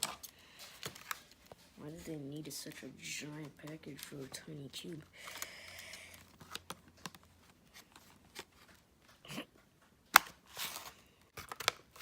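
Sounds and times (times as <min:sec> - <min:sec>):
packaging crackles and clicks: 0:00.0 - 0:01.7, 0:03.4 - 0:09.2, 0:10.1 - 0:12.0
packaging rustling: 0:00.0 - 0:08.9
sharp plastic snap: 0:10.1 - 0:10.4.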